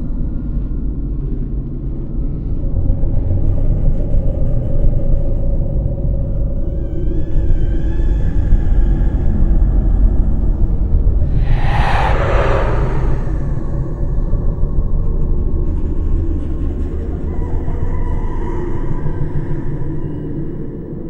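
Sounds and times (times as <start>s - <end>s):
deep low rumbling drone: 0.0s - 21.0s.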